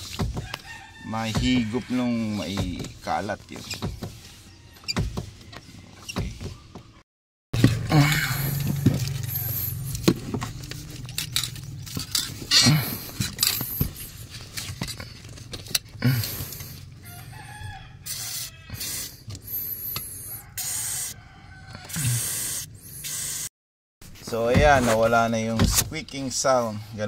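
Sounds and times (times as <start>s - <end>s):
rooster crowing: 0.4s - 2.4s, 17.0s - 19.0s, 20.2s - 22.2s.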